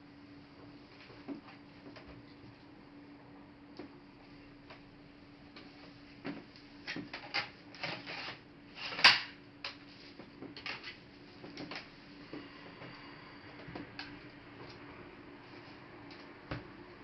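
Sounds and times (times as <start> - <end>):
faint steady hum: 0.0 - 17.0
small clicks and scrapes: 6.8 - 11.9.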